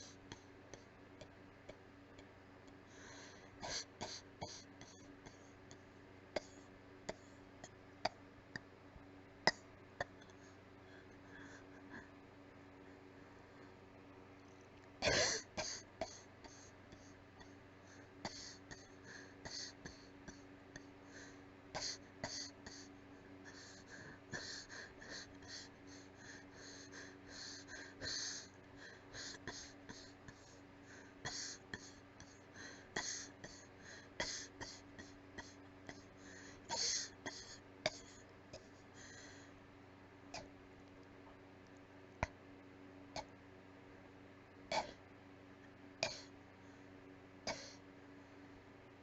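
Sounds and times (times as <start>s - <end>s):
person coughing weakly: 15.0s - 17.1s, 47.5s - 47.8s.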